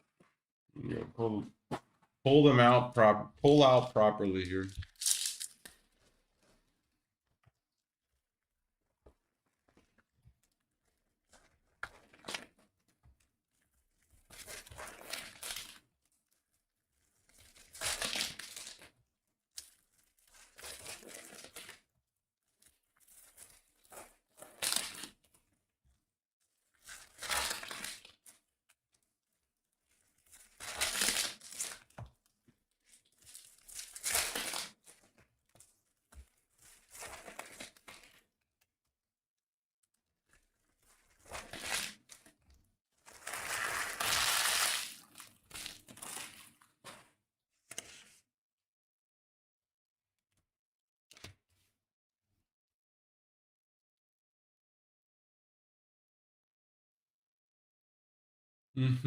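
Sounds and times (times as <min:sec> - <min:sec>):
card pack wrappers tearing and crinkling: 0:04.6 - 0:05.8, 0:14.4 - 0:15.8, 0:17.5 - 0:18.9, 0:19.6 - 0:21.8, 0:23.1 - 0:25.2, 0:26.9 - 0:28.2, 0:30.3 - 0:31.9, 0:33.0 - 0:35.0, 0:41.3 - 0:42.1, 0:43.1 - 0:46.7.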